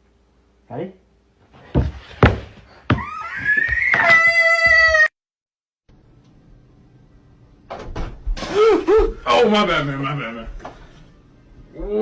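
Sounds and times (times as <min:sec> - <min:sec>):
long high-pitched cry: 0:02.9 - 0:05.2.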